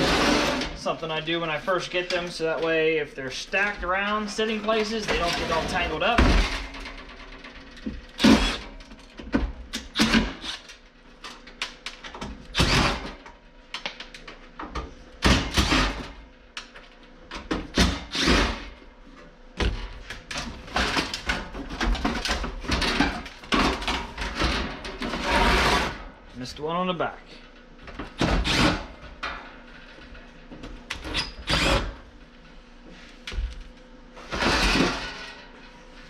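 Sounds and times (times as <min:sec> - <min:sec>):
metal panels clanking and scraping: 0:03.9 - 0:08.3.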